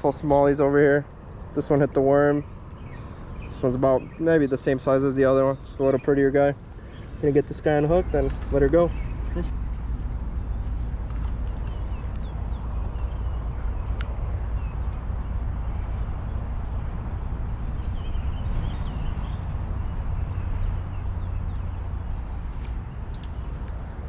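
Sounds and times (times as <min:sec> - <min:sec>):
low rumble: 0:07.2 - 0:24.0
light clicks: 0:08.2 - 0:14.4, 0:22.6 - 0:23.9.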